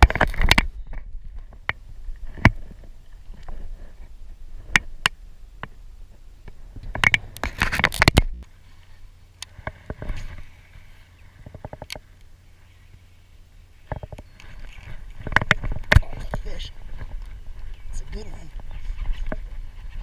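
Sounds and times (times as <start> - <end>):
fishing gear knocks and scrapes: 6.8 - 8.4.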